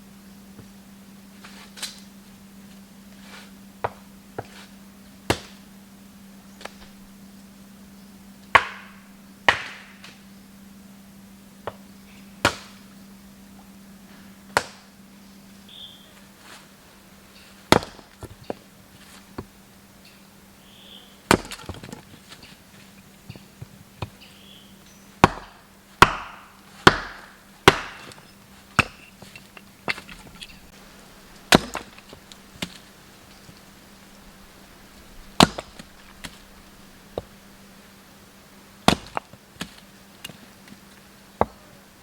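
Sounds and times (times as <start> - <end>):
blade chopping wood: 5.3 - 5.6, 8.6 - 8.9, 9.5 - 10.1, 12.4 - 12.8, 17.7 - 18.2, 21.3 - 22.0, 25.2 - 30.5, 31.5 - 32.8, 35.4 - 36.4, 38.9 - 39.8.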